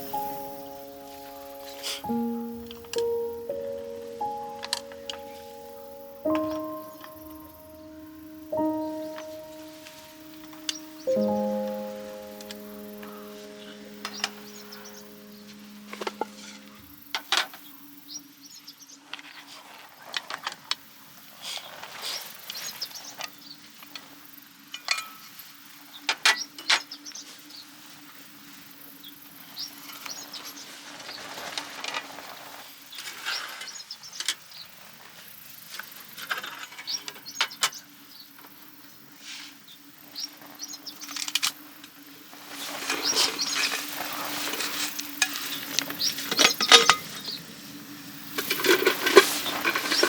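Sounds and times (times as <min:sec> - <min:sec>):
bird chirps: 0:00.0 - 0:17.0
insects: 0:00.0 - 0:50.0.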